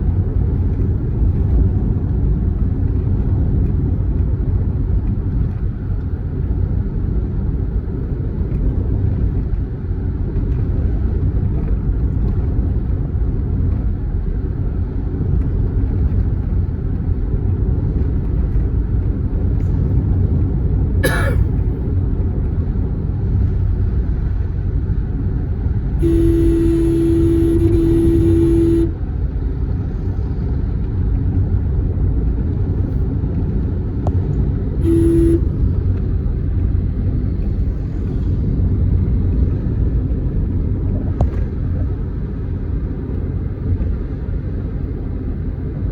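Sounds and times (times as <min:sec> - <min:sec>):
vehicle road rumble: 0:00.0 - 0:45.9
vehicle horn held on one note: 0:26.0 - 0:29.0, 0:34.8 - 0:35.7.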